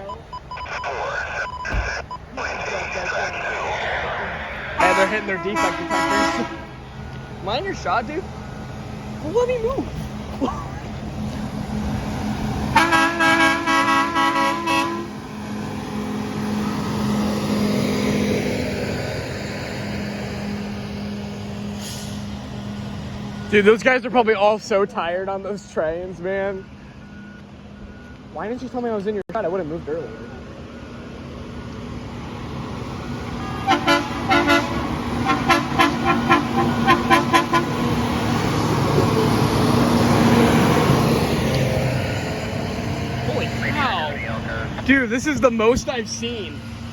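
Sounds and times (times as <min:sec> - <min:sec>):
engine hum: 0:00.0 - 0:46.9
horn short toots: 0:04.8 - 0:06.7, 0:33.4 - 0:37.8.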